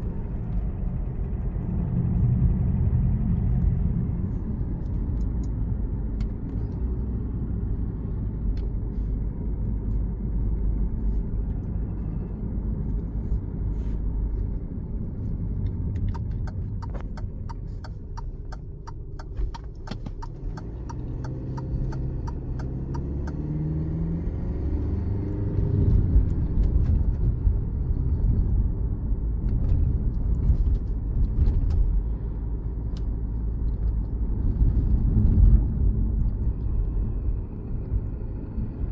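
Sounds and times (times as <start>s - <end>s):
engine knocking clicks: 15.9s - 23.4s.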